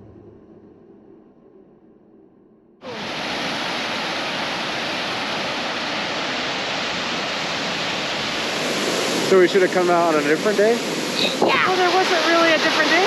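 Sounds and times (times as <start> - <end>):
waterfall rushing: 2.8 - 13.0.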